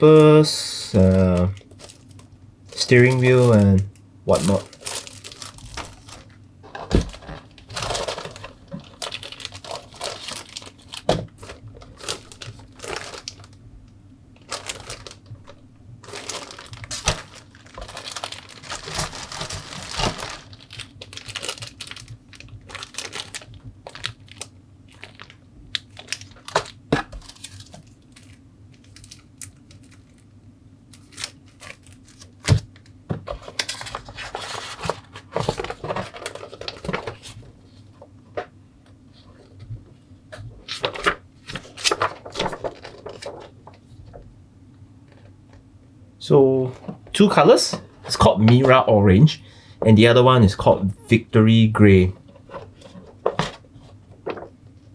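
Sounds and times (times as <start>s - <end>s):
plastic bags crinkling: 0.9s - 13.6s, 14.4s - 30.3s, 30.9s - 37.6s, 40.6s - 43.9s, 52.5s - 54.6s.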